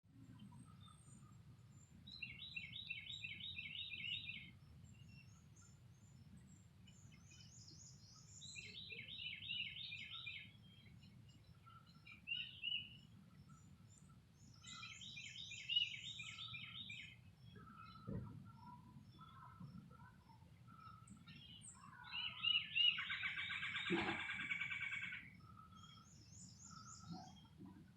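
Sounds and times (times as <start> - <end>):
high thin birdsong: 0.1 - 27.9
brief thump: 18.1 - 18.4.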